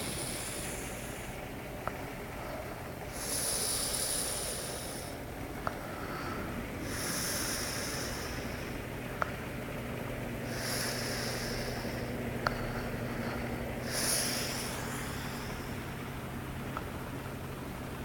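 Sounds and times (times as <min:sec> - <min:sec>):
steady low hum: 0:00.0 - 0:18.0
person snoring: 0:10.5 - 0:12.0, 0:13.8 - 0:15.7.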